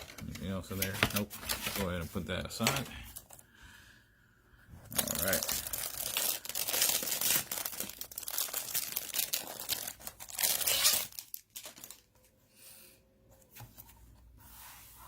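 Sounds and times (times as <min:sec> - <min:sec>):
packaging crinkling: 0:04.9 - 0:12.3.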